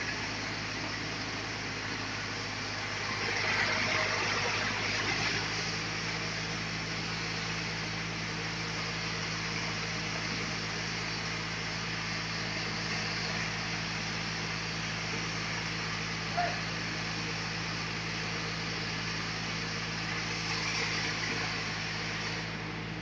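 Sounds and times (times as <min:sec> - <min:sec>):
sawmill machinery humming: 0:00.0 - 0:23.0
broad hiss: 0:04.3 - 0:23.0.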